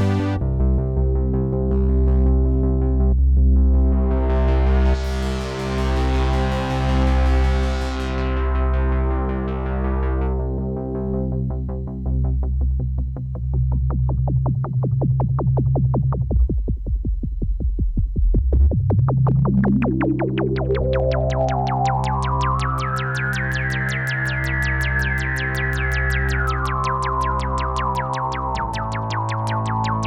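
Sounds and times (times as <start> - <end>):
synthesizer playing fast notes: 0.0 - 0.4, 22.5 - 30.0
held low synthesizer chord: 0.0 - 12.8, 19.8 - 30.0.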